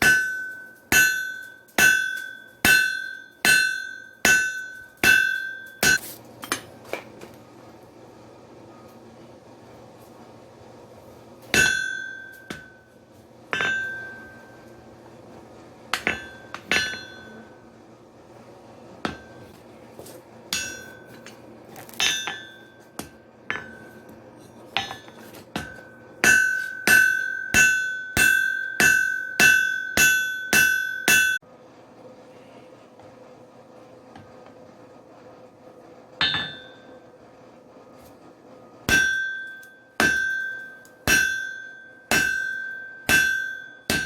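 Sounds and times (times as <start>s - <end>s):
hammer striking iron on anvil: 0.0s - 7.0s, 11.5s - 12.9s, 13.5s - 14.8s, 15.9s - 17.5s, 19.0s - 19.6s, 20.5s - 24.1s, 24.8s - 31.4s, 36.2s - 36.9s, 38.9s - 44.0s.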